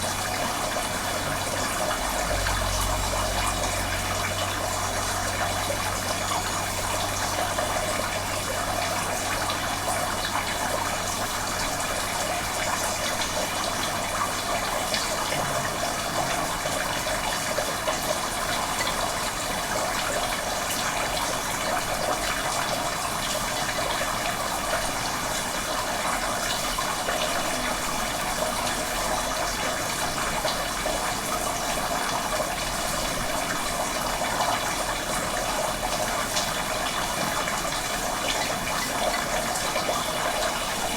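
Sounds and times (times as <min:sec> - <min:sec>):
running water: 0:00.0 - 0:40.9.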